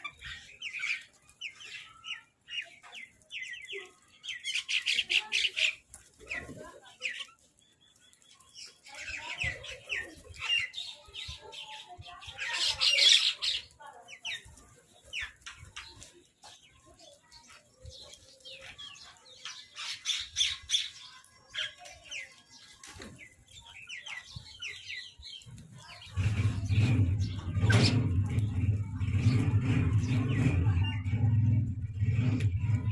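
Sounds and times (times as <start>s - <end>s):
wings flapping: 3.7s - 7.4s.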